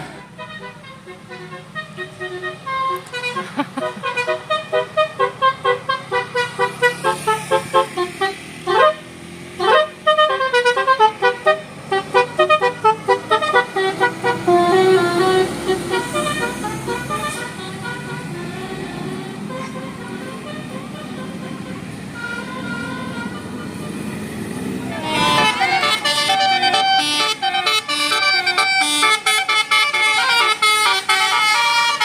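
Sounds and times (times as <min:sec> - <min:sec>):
multi-tone bus air horn tune: 0:00.0 - 0:32.0.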